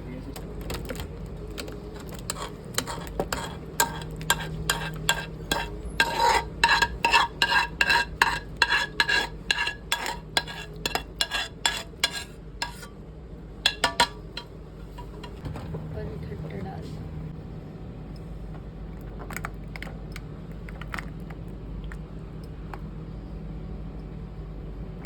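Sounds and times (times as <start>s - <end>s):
metal utensil clanking in pan: 2.3s - 12.9s, 13.7s - 15.4s.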